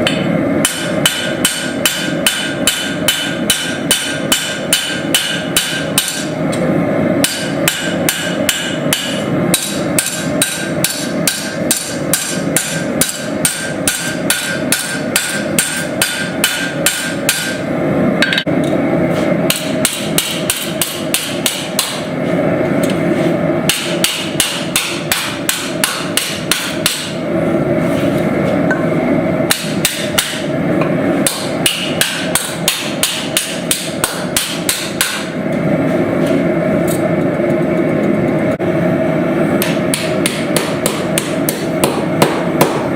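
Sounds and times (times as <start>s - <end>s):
hammer striking steel: 0.0s - 6.4s, 7.2s - 17.6s, 18.2s - 18.8s, 19.5s - 22.1s, 23.6s - 27.2s, 29.5s - 35.4s, 39.6s - 42.9s.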